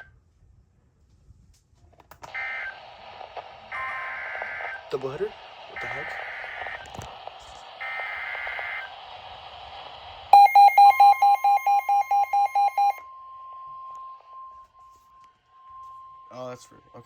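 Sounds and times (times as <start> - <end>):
radio hiss: 2.2 - 11.1
steady warning tone: 3.7 - 9.0, 10.3 - 17.0
rapid alarm beeping: 3.8 - 6.8, 10.3 - 13.1.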